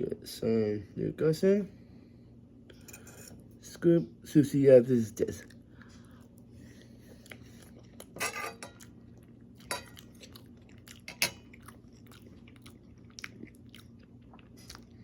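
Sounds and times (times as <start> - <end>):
chewing: 5.4 - 15.0.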